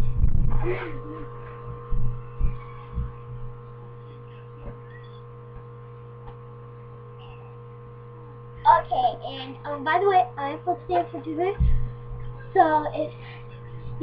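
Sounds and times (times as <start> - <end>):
low thumps: 0.0 - 3.9, 11.5 - 12.4
electrical mains hum: 0.0 - 14.0.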